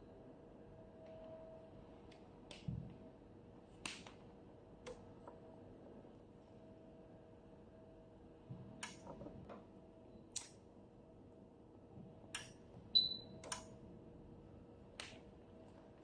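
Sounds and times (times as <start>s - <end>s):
multimeter beep: 12.9s - 13.5s.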